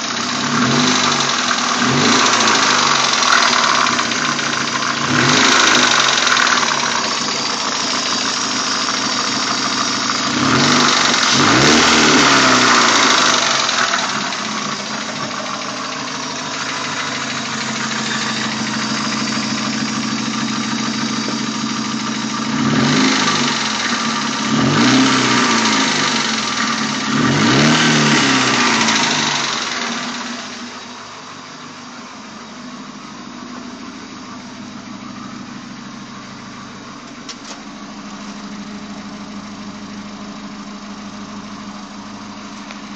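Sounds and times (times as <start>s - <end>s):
car engine revving: 0.0s - 42.9s.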